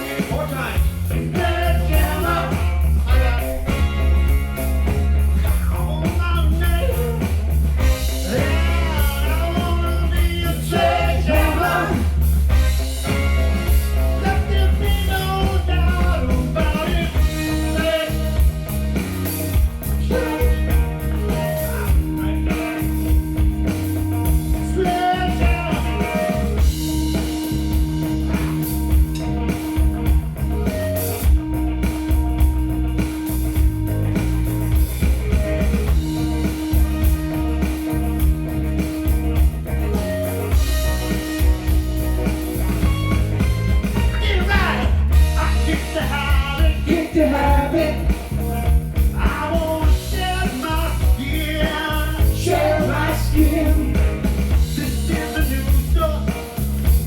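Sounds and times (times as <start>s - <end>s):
rock-soul instrumental: 0.0s - 57.0s.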